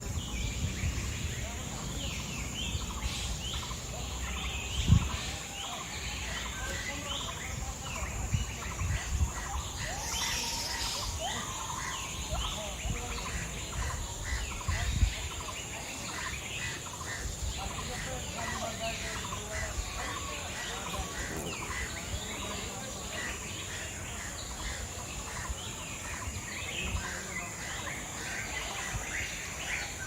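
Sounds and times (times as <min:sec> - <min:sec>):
birds calling: 0:00.0 - 0:30.0
high insect drone: 0:00.0 - 0:30.0.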